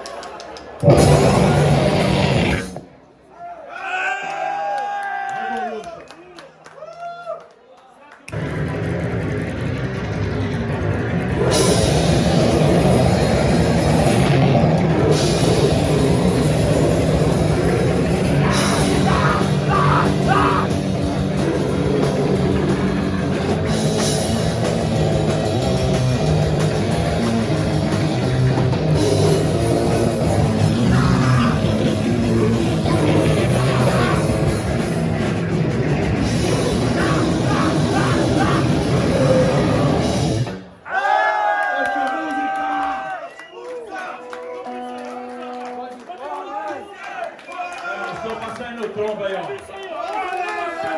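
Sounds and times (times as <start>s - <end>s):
live band playing heavy rock: 0.8s - 2.8s, 8.4s - 40.7s.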